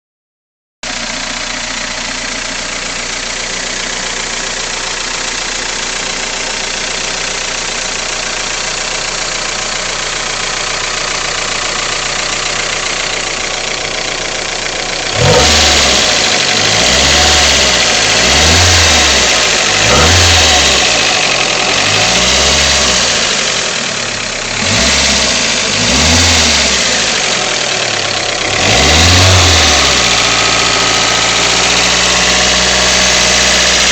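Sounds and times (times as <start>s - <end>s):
car engine idling and revving: 0.8s - 33.9s
engine ticking: 1.0s - 33.9s.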